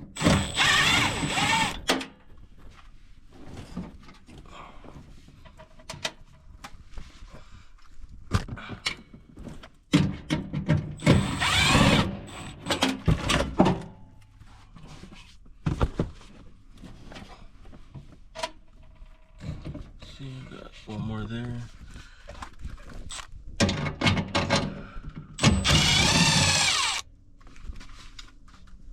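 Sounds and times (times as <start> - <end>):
cordless drill running: 0.0 - 1.9, 11.0 - 12.8, 25.4 - 27.1.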